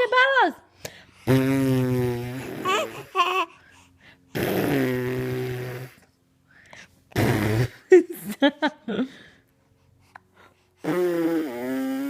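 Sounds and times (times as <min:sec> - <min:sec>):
mouth fart noises: 0:01.2 - 0:02.9, 0:04.3 - 0:06.1, 0:07.1 - 0:07.9, 0:10.8 - 0:12.0.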